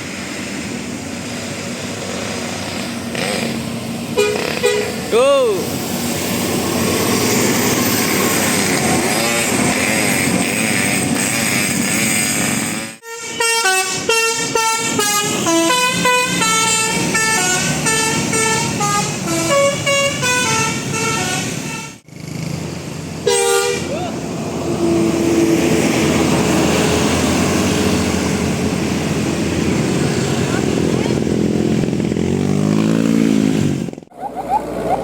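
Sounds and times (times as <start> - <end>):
engine and street noise: 0.0 - 35.0
multi-tone air horn playing tune: 4.2 - 5.0, 9.2 - 22.0, 23.2 - 23.9
short horn blast: 9.8 - 22.0, 23.3 - 24.0.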